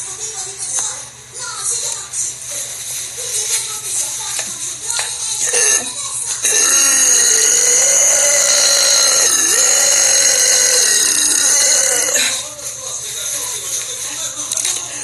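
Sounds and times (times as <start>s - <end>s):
woman burping: 5.4s - 12.4s.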